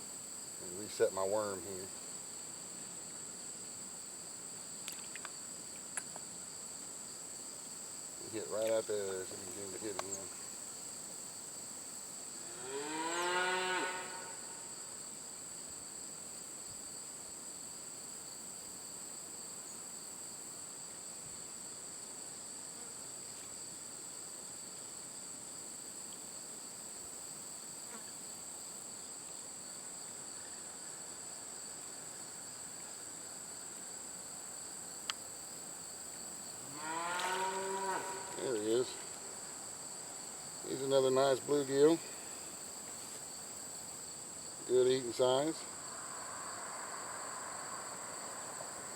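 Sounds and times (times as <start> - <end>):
insects droning: 0.0 - 48.9
cow mooing: 12.5 - 14.5, 36.7 - 38.6.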